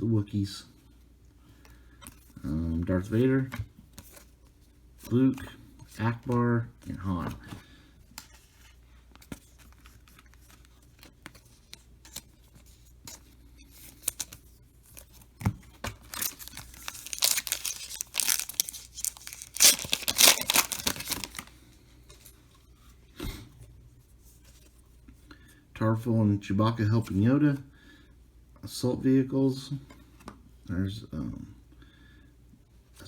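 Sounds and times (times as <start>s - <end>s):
wrapper tearing and crinkling: 16.0s - 21.5s.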